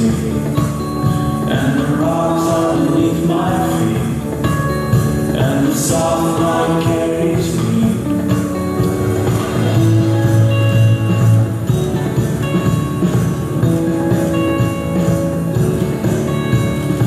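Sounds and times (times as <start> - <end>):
person singing: 0.0 - 10.2
music playing: 0.0 - 17.0.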